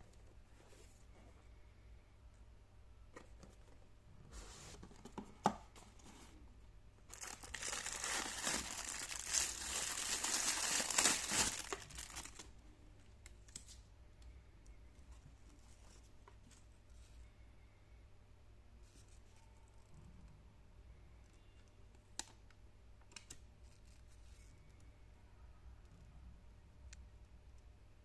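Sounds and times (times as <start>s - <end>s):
packaging tearing and crinkling: 7.1s - 12.4s.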